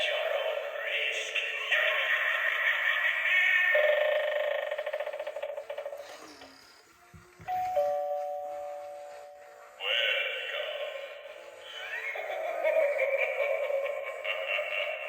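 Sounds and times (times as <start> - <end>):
electronic ding-dong chime: 7.5 - 9.5.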